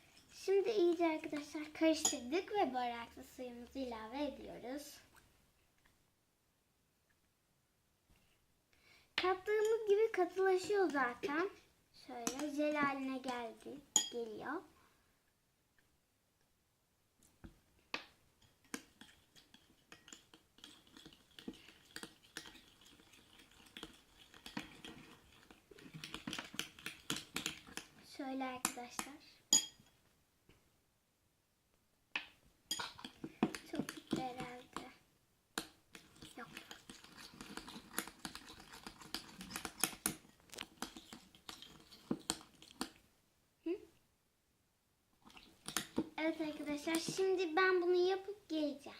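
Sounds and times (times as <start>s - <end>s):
spoon clicking and tapping in slime: 12.2s - 12.7s, 14.0s - 14.2s, 18.0s - 25.4s, 26.0s - 27.9s, 28.6s - 29.9s, 32.2s - 34.9s, 35.6s - 43.0s.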